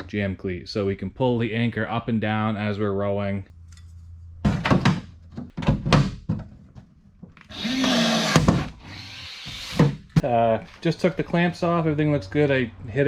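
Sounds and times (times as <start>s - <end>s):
power tool running: 7.5s - 9.8s.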